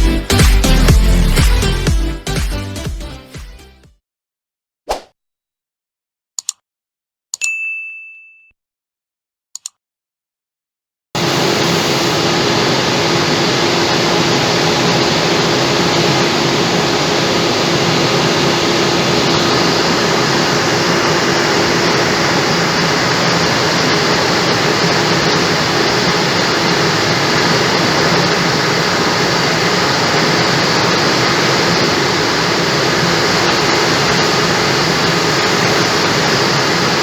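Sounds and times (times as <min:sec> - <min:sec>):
short ding: 0:07.4 - 0:08.6.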